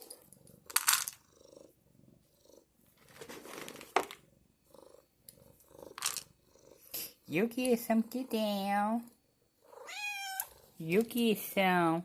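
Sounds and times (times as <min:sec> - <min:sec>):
cat purring: 0:00.0 - 0:11.3.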